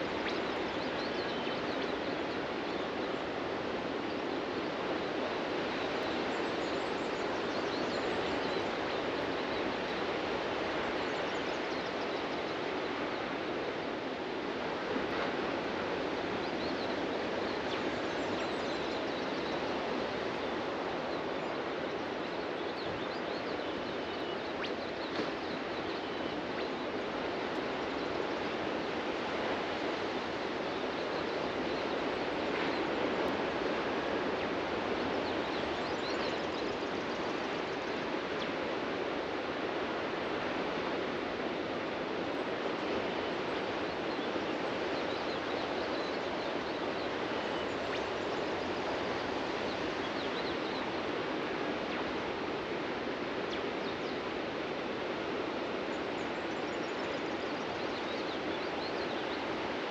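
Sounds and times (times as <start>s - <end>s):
faint bird chirps: 0.0s - 3.2s, 16.4s - 29.0s.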